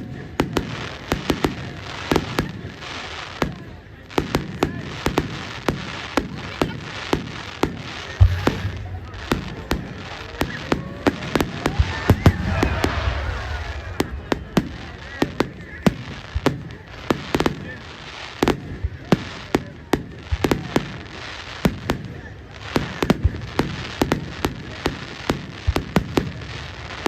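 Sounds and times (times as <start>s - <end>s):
fireworks cracks and bangs: 0.0s - 27.0s
deep firework boom: 8.1s - 17.2s.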